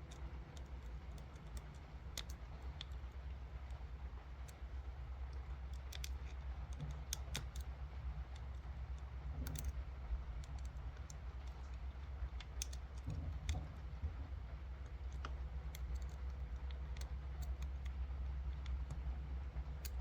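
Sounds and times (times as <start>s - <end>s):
low steady hum: 0.0s - 20.0s
lock pick clicking in lock: 6.8s - 7.7s, 9.4s - 9.8s, 12.4s - 13.7s.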